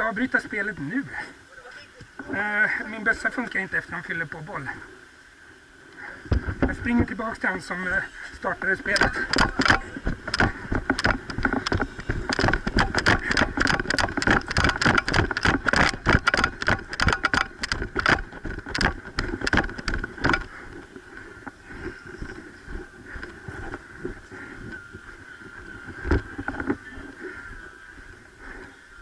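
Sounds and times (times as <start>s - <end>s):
steady rushing noise: 2.2s - 29.0s
running footsteps: 8.4s - 29.0s.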